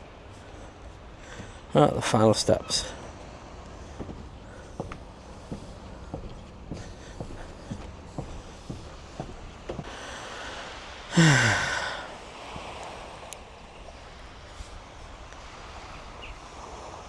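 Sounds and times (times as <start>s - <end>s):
wind: 0.0s - 17.0s
footsteps on steps: 0.1s - 10.1s
man sighing: 11.1s - 12.2s.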